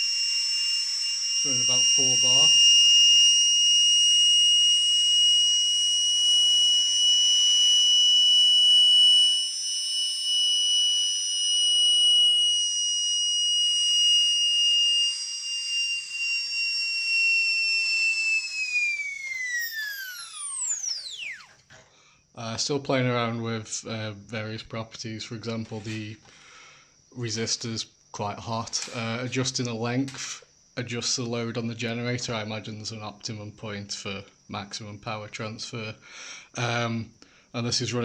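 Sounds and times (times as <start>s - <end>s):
dental drill high whine: 0.0s - 21.7s.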